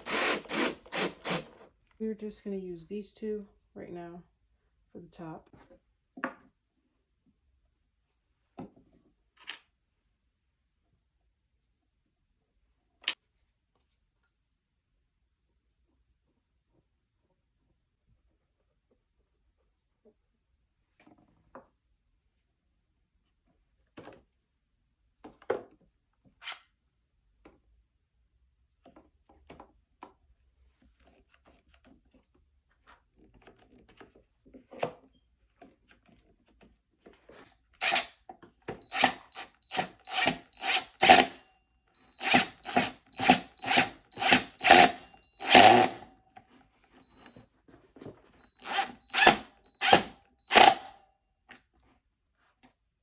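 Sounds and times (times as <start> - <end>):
power drill whirring: 0.0 - 1.7, 37.8 - 41.4, 42.0 - 46.1, 48.4 - 51.0.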